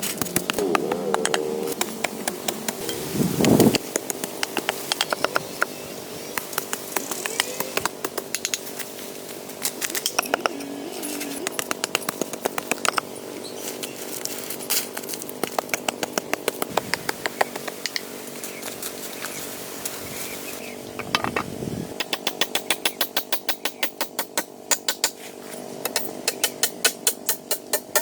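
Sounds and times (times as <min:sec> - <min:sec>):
small engine running: 0:00.0 - 0:19.4.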